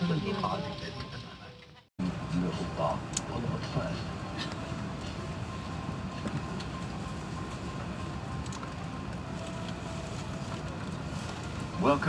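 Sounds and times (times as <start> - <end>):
aircraft cabin low rumble: 0.0 - 12.0.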